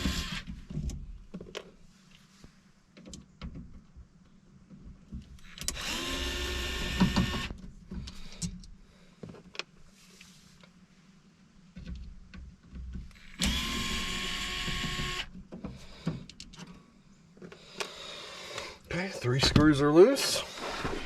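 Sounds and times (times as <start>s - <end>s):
cordless drill spinning: 0.0s - 0.5s, 5.7s - 7.5s, 13.1s - 15.3s.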